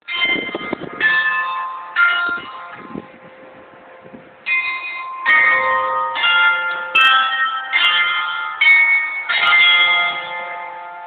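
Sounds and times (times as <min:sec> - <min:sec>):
carillon bells playing a tune: 0:00.0 - 0:03.6, 0:04.4 - 0:11.0
wind buffeting microphone: 0:00.0 - 0:07.2.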